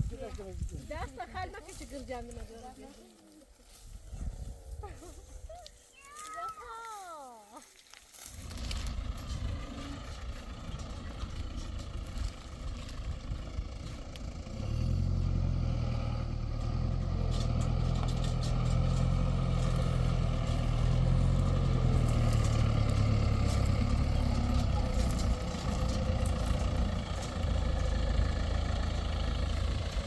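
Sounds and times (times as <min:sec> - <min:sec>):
engine running steadily: 0:08.3 - 0:30.0.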